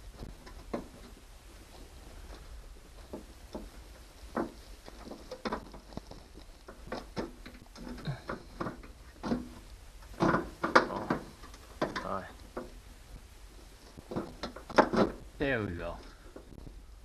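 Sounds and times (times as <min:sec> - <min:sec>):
clicks knocks and scrapes of motor: 0:03.0 - 0:12.8.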